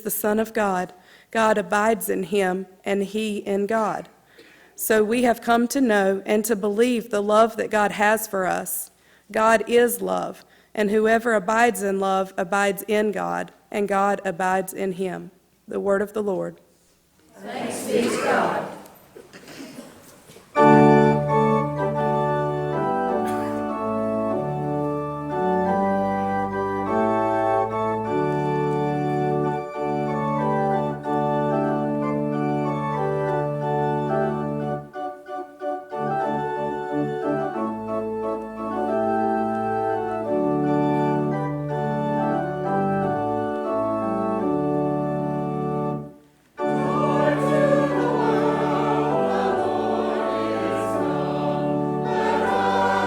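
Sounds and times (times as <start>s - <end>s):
choir singing: 17.3s - 19.1s, 46.6s - 53.0s
church organ chords: 20.5s - 53.0s.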